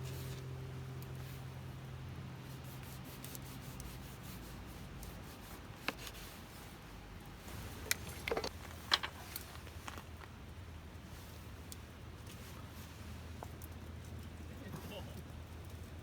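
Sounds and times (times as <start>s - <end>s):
faint low hum: 0.0s - 16.0s
light clicks and knocks: 7.8s - 10.4s.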